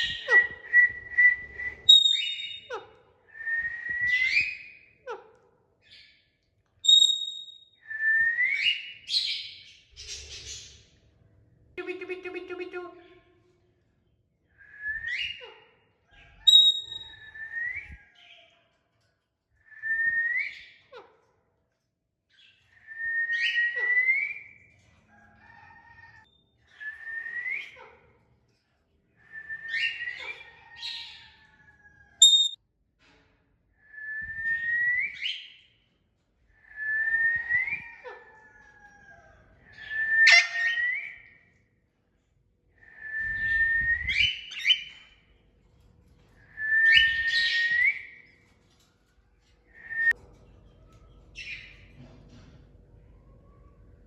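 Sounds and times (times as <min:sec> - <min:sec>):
parrot whistling: 0:32.2 - 0:32.6, 0:39.8 - 0:41.2.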